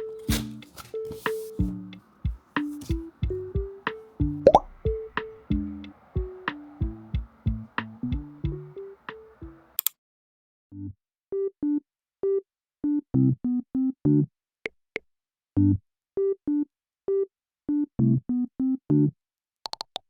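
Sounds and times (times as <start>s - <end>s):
light synthesizer melody: 1.0s - 9.8s.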